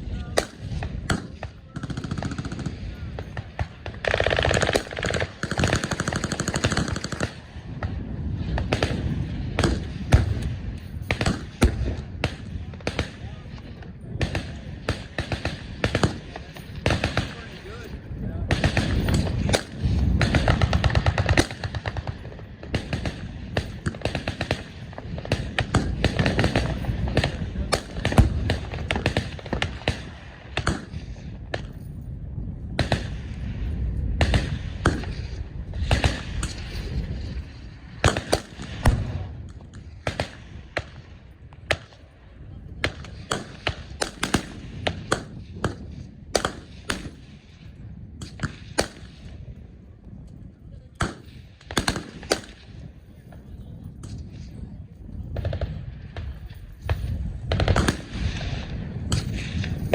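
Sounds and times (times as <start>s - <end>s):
gunshots: 0.0s - 31.8s, 32.7s - 42.2s, 42.8s - 49.6s, 50.9s - 53.4s, 54.0s - 59.9s
machine gun fire: 0.4s - 13.4s, 14.2s - 17.6s, 18.5s - 31.7s.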